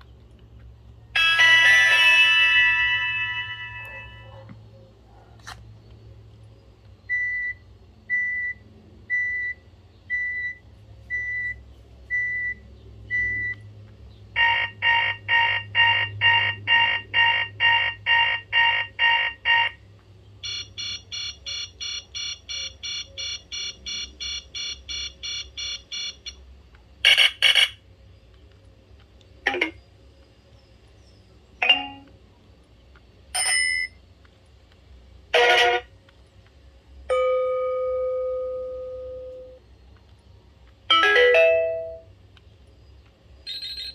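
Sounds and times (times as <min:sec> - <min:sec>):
rapid high-pitched beeping: 0:43.5 - 0:43.9.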